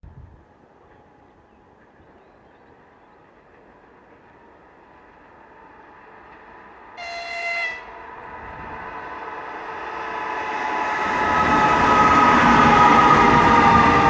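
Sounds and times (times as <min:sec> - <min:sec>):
train rumble: 0:00.1 - 0:14.0
train horn blast: 0:07.0 - 0:08.2.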